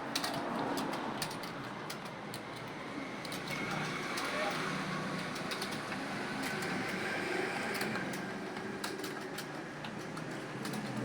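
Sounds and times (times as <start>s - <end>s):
computer keyboard typing: 0.0s - 3.6s, 5.2s - 7.0s, 7.7s - 11.0s.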